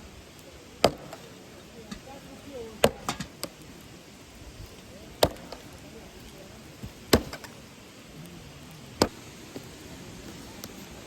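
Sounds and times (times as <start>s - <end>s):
flowing water hiss: 0.0s - 11.0s
wood chopping strikes: 0.8s - 2.1s, 2.8s - 3.6s, 5.2s - 5.8s, 6.8s - 7.6s, 9.0s - 9.7s.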